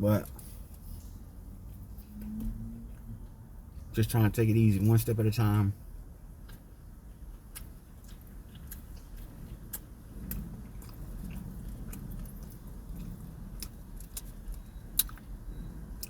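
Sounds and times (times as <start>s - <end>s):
low steady rumble: 0.0s - 16.0s
man chewing close to microphone: 6.1s - 16.0s.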